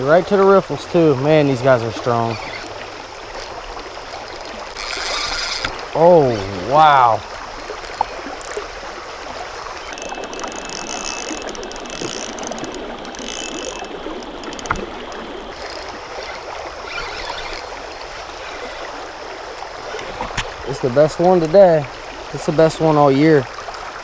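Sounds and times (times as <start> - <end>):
creek water rushing: 0.0 - 24.0
fishing reel clicking: 2.2 - 8.7, 9.3 - 14.8, 15.6 - 18.8.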